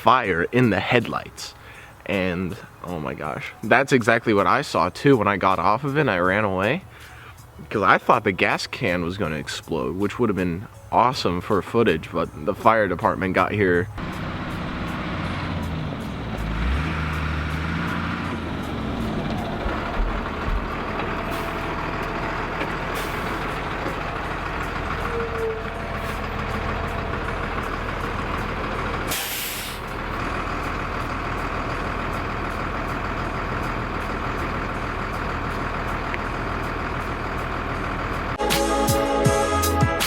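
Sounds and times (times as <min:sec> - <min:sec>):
diesel engine running: 0:13.8 - 0:39.8
loud hiss of air: 0:29.1 - 0:29.9.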